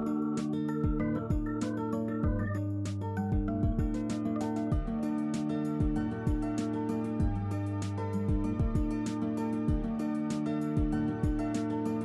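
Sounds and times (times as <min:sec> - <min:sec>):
background music with beat: 0:00.0 - 0:12.0.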